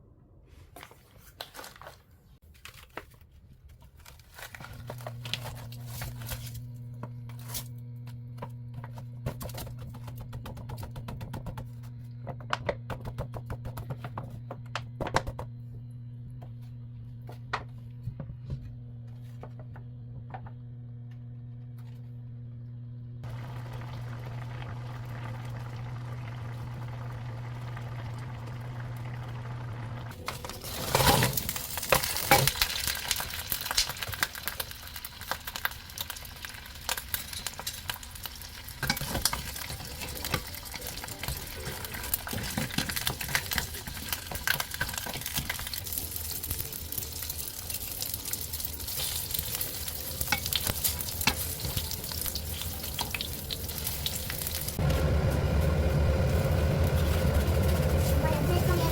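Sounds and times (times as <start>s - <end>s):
steady low hum: 4.8s - 31.6s, 49.0s - 58.9s
food sizzling in a pan: 23.2s - 58.9s.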